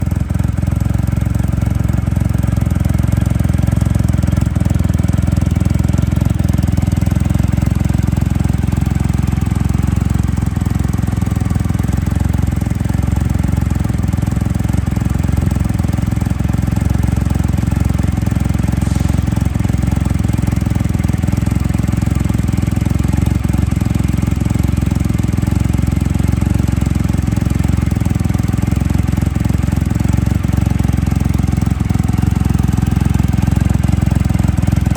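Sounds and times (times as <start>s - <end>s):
motorcycle engine idling: 0.0s - 34.9s.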